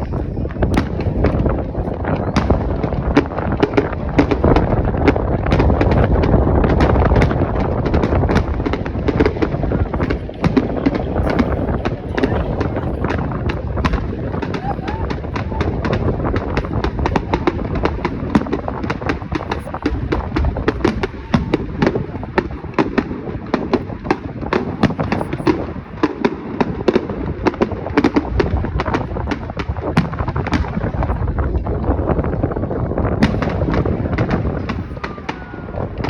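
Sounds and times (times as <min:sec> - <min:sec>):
low rumble: 0:00.0 - 0:26.0
fireworks bangs and crackling: 0:00.0 - 0:36.0.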